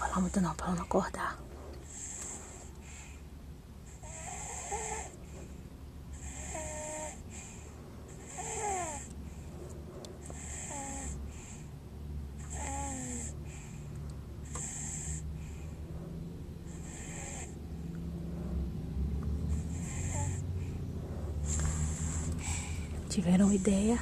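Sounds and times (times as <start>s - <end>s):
baby snoring: 1.8s - 3.2s, 3.8s - 5.2s, 6.1s - 9.1s, 10.2s - 11.7s, 12.4s - 13.8s, 14.4s - 15.7s, 16.6s - 17.6s, 19.4s - 24.0s.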